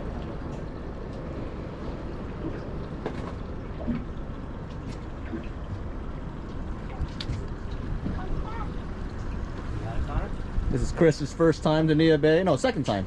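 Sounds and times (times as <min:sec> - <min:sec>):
water noise: 0:00.0 - 0:13.0
wind: 0:00.0 - 0:13.0.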